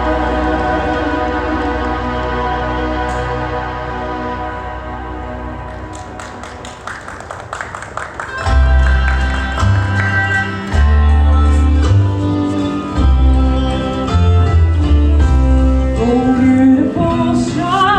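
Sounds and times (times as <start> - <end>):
deep bass line: 0.0 - 6.2, 8.4 - 17.9
instrumental music with held notes: 8.3 - 17.9
person singing: 8.6 - 17.9.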